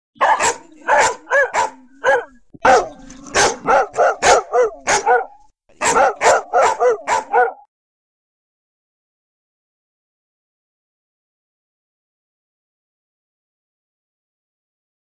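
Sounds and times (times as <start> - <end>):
dogs barking: 0.2 - 7.7.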